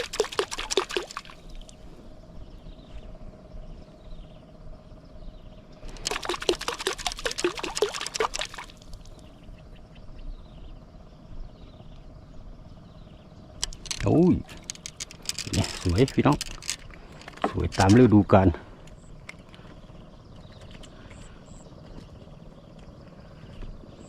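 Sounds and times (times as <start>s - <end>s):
water splashing and sloshing: 0.0s - 1.8s, 5.8s - 9.2s.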